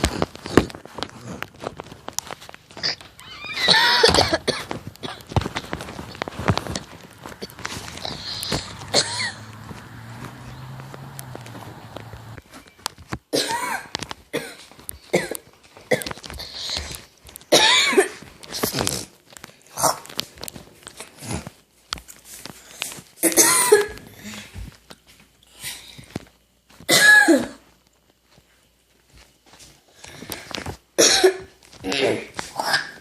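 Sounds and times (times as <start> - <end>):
person coughing: 3.6 - 5.4, 7.4 - 9.6, 13.4 - 16.9, 17.5 - 18.2, 23.2 - 24.1, 26.9 - 27.6, 31.0 - 33.0.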